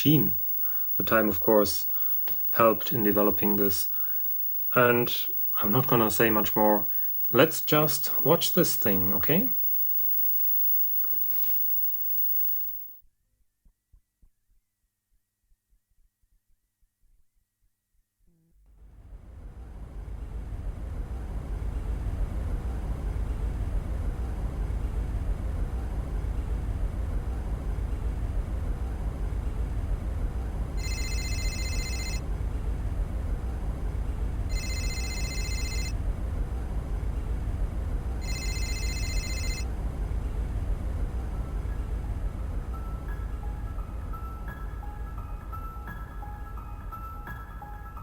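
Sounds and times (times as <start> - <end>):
bell-like electronic tones: 0.0 - 12.9.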